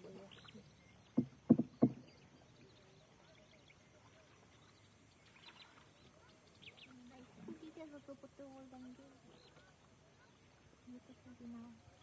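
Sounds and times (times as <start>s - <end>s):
dull thumps: 1.2s - 2.0s.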